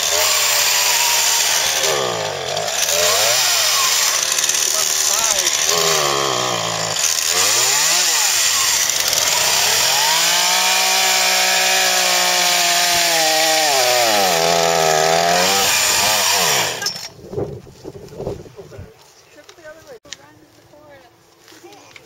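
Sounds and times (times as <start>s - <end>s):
chainsaw cutting tree trunk: 0.0s - 17.2s.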